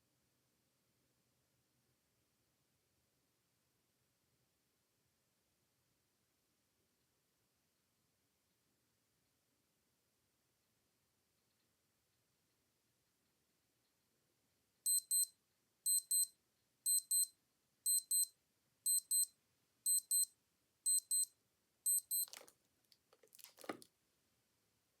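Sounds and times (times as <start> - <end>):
digital watch alarm double beep: 14.9 - 15.3, 15.9 - 16.3, 16.9 - 17.3, 17.9 - 18.3, 18.9 - 19.3, 19.9 - 20.3, 20.9 - 21.3, 21.9 - 22.3.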